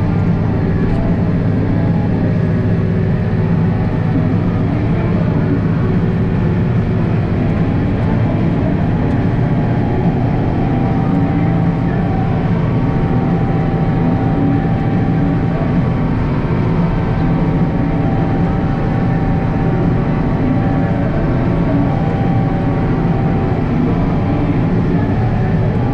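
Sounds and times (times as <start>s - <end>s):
tractor diesel engine running: 0.0s - 25.9s.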